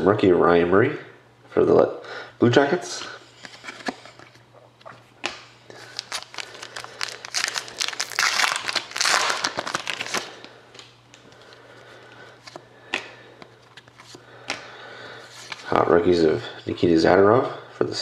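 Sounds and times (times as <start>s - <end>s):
wrapper crinkling and tearing: 5.7s - 10.9s
cards clicking and tapping: 12.9s - 14.7s.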